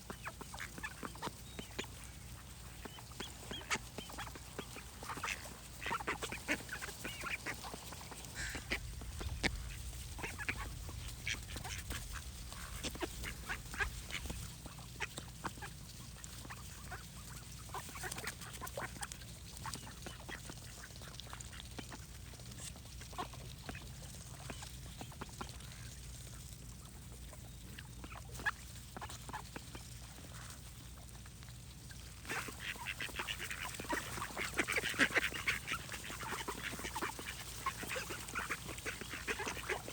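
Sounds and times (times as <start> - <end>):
duck quacking: 0.1 - 15.8, 32.2 - 39.9.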